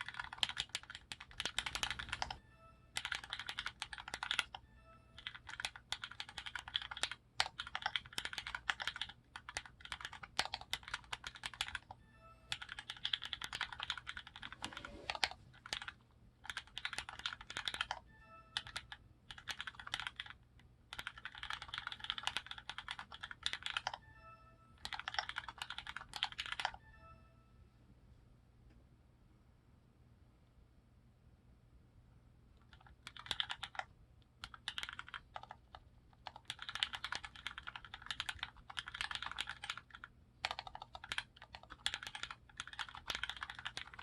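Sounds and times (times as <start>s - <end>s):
mechanical keyboard typing: 0.0s - 4.6s, 5.2s - 18.0s, 18.6s - 24.0s, 24.8s - 26.8s, 32.6s - 44.0s
faint short ringing tone: 2.4s - 3.0s, 12.0s - 12.6s, 18.0s - 18.8s, 24.0s - 24.8s, 26.7s - 27.8s.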